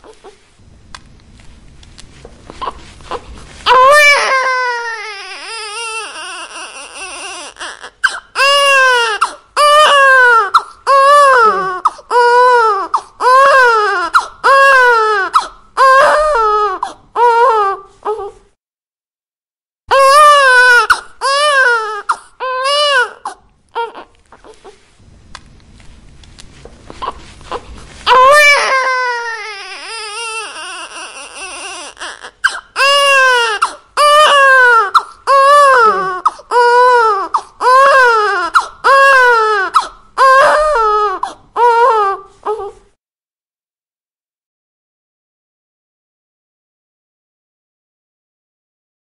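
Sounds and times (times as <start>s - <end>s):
baby crying: 2.5s - 18.4s, 19.9s - 24.8s, 26.9s - 42.8s.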